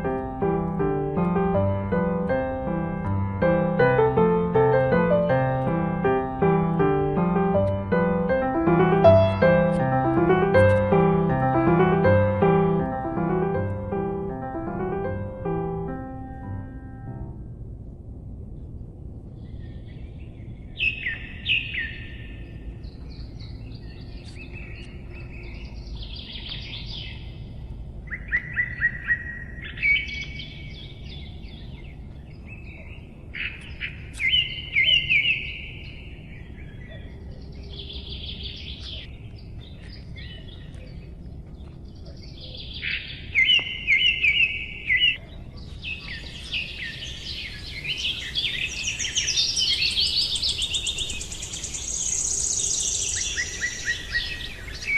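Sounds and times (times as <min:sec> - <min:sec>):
low outdoor background noise: 0:00.0 - 0:54.9
songbird trilling and chirping: 0:28.1 - 0:54.9.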